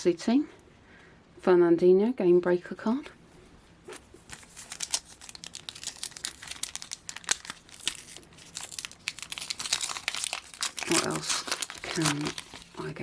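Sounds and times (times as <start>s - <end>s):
foil wrapper crinkling and tearing: 4.2s - 13.0s.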